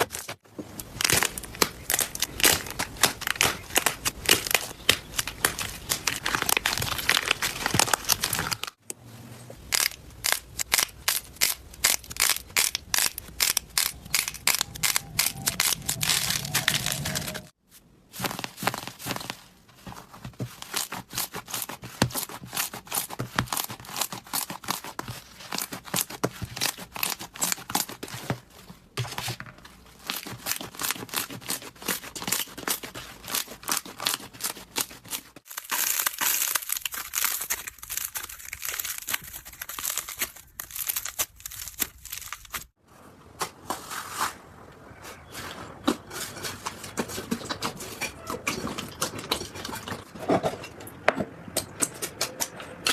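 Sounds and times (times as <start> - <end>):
slime crackling and popping: 0.8 - 8.8, 9.7 - 17.4, 33.4 - 42.8.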